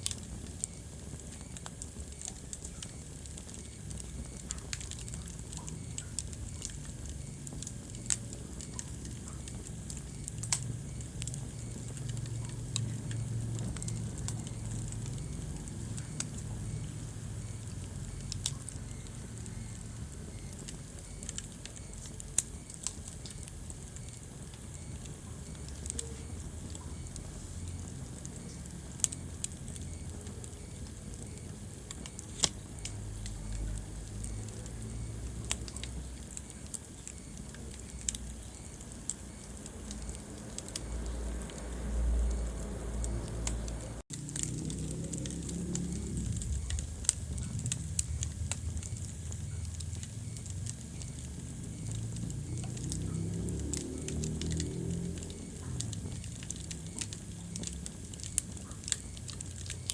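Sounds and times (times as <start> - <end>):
fire crackling and popping: 0.0 - 59.9
low rumble of flames: 0.0 - 59.9
low rumble: 40.8 - 52.3.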